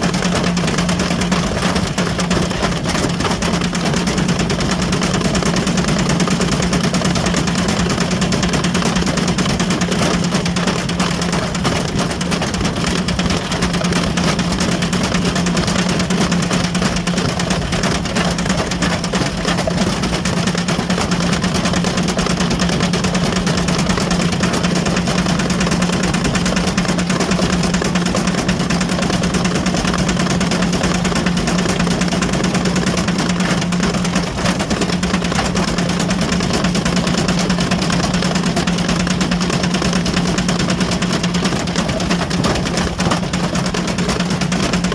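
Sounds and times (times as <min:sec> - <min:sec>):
brick rattling in drum: 0:00.0 - 0:44.9
washing machine motor hum: 0:00.0 - 0:44.9.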